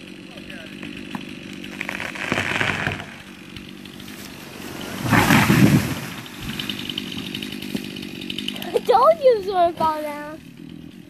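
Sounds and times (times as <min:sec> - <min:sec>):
chainsaw idling: 0:00.0 - 0:11.0
wood cracking: 0:00.7 - 0:11.0
tree trunk crashing to ground: 0:00.8 - 0:08.5
branches rushing: 0:00.8 - 0:11.0.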